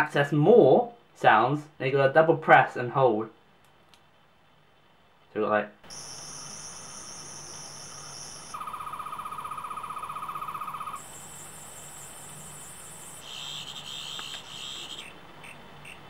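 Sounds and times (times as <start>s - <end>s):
electronic whining tones: 5.8s - 16.0s
fast-warbling electronic buzz: 5.8s - 16.0s
pulsing electronic beeps: 5.9s - 16.0s.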